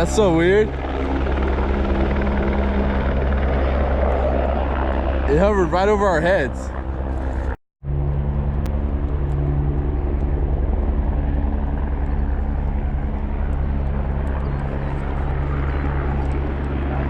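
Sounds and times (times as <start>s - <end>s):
helicopter drone overhead: 0.0s - 17.0s.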